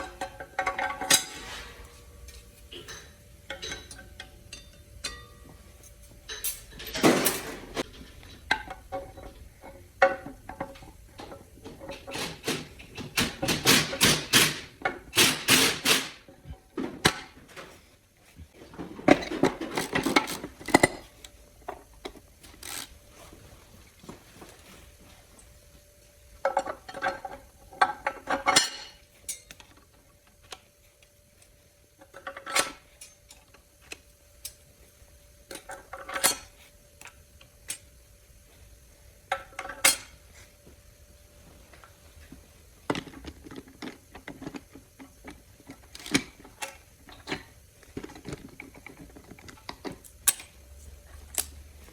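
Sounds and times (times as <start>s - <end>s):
faint steady hum: 0.0s - 13.4s
metal parts and tools clanking: 0.0s - 17.8s, 18.6s - 21.2s.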